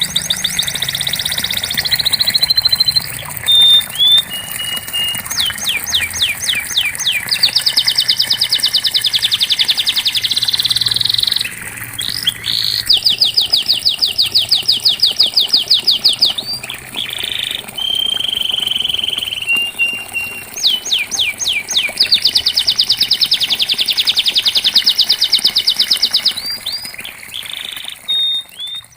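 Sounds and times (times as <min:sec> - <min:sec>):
canary singing: 0:00.0 - 0:28.9.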